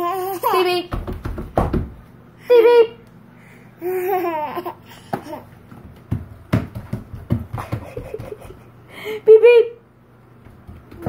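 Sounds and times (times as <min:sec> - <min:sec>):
knocks and thumps: 0:00.9 - 0:02.0, 0:05.1 - 0:08.6, 0:10.4 - 0:11.0.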